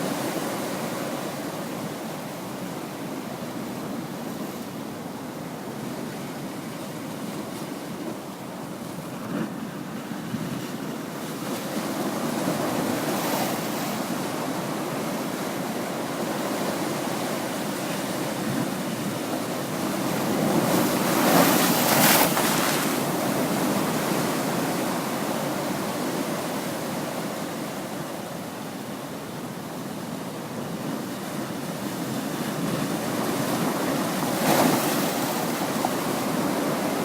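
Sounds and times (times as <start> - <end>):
waves crashing against rocks: 11.1 - 28.0, 30.5 - 37.0.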